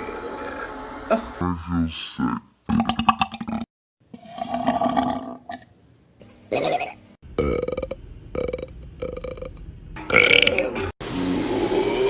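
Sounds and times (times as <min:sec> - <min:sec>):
person burping: 0:02.7 - 0:03.7, 0:06.5 - 0:10.9.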